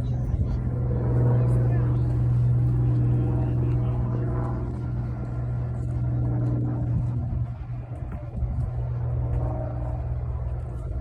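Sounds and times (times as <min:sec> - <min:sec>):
constant low hum: 0:00.0 - 0:11.0.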